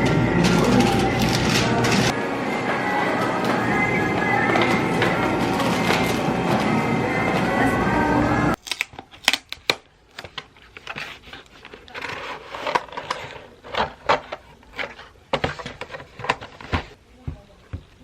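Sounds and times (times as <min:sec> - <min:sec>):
background music: 0:00.0 - 0:08.6.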